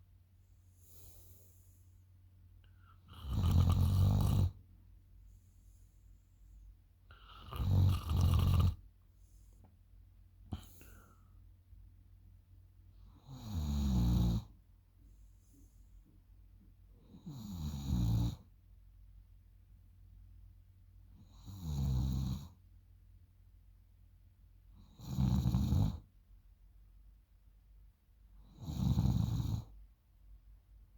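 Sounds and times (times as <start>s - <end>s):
girl snoring: 3.0s - 4.6s, 7.1s - 8.8s, 25.0s - 26.0s, 28.6s - 29.6s.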